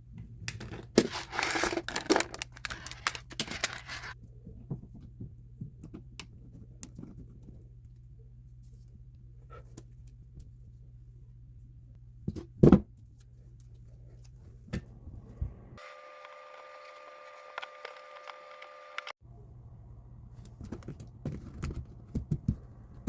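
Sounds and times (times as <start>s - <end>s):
crinkling and rustling: 0.3s - 7.8s, 20.4s - 23.0s.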